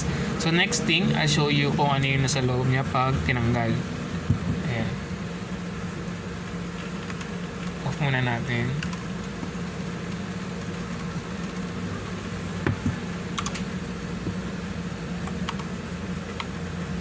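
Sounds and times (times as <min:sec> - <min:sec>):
steady low hum: 0:00.0 - 0:17.0
loud knocks: 0:12.6 - 0:13.0
keyboard clicks and taps: 0:12.6 - 0:14.4.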